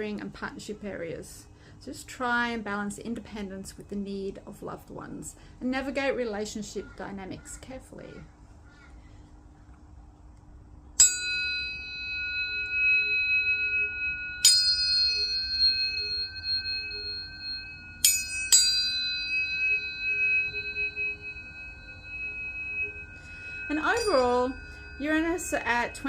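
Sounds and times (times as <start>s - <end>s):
tuning forks ringing: 11.0s - 26.0s.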